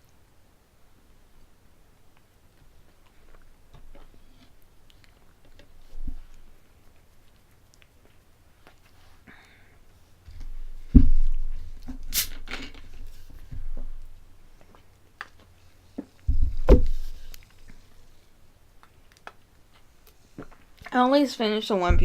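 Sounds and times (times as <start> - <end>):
objects thumping on a table: 10.9 - 12.0, 16.3 - 17.3.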